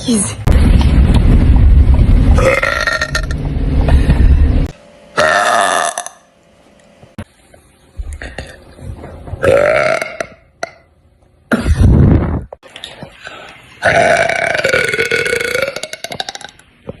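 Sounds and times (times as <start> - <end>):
person burping: 2.4 - 3.4, 5.2 - 6.3, 8.2 - 8.6, 9.4 - 10.9, 11.5 - 12.2, 13.8 - 16.6.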